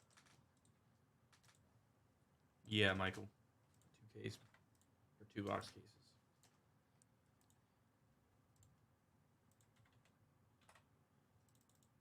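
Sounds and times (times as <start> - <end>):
keyboard and mouse clicks: 0.0 - 1.6, 7.4 - 7.6, 9.5 - 12.0.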